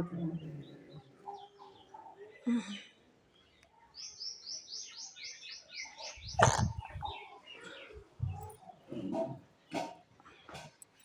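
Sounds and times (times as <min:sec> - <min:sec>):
bird chirping: 0:03.9 - 0:08.0.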